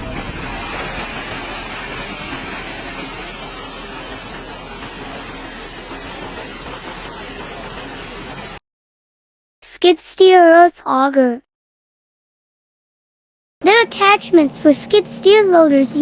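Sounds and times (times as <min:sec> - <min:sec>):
excavator engine running: 0:00.0 - 0:08.6, 0:13.6 - 0:16.0
pump rushing noise: 0:00.0 - 0:08.6, 0:13.6 - 0:16.0.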